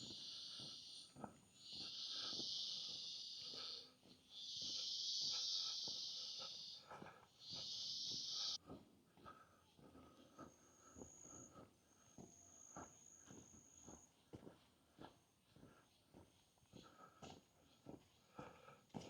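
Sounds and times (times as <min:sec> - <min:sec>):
insects buzzing: 0:00.0 - 0:08.6
soft footsteps on forest floor: 0:00.0 - 0:19.0.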